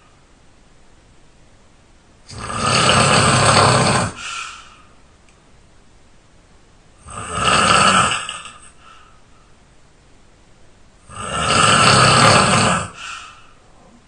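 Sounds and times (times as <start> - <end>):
person snoring: 2.3 - 4.8, 7.0 - 8.8, 11.0 - 13.6
soft breath: 4.1 - 5.1, 8.6 - 9.6, 12.9 - 14.0.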